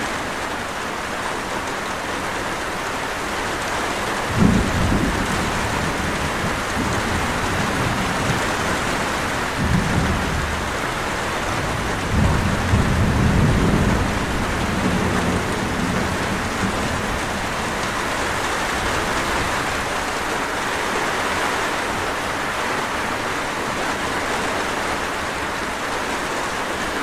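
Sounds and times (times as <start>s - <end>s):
steady rain: 0.0s - 27.0s
thunder rumbling: 4.2s - 20.2s.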